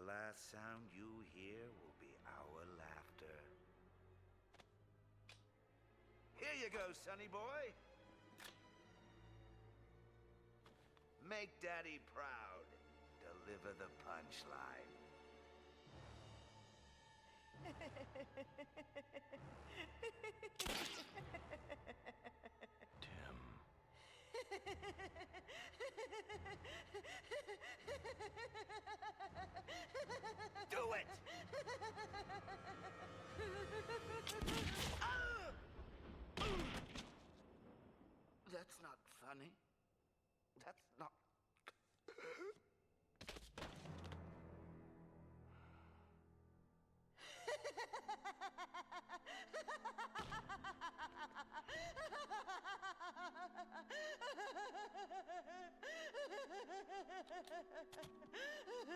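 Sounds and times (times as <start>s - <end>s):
man cackling laugh: 17.6s - 23.0s, 24.4s - 34.6s, 47.3s - 58.9s
cartoon villain cackling: 24.4s - 35.6s.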